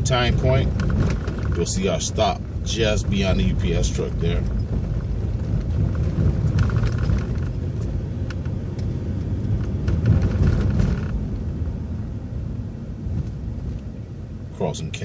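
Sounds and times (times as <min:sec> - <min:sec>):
bus drivetrain and road rumble: 0:00.0 - 0:15.0
light rattles and clicks: 0:00.1 - 0:11.6.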